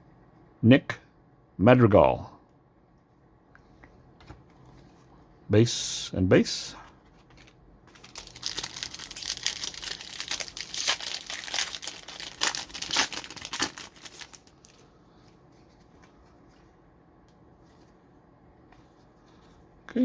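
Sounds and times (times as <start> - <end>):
foil wrapper crinkling: 7.4 - 14.8.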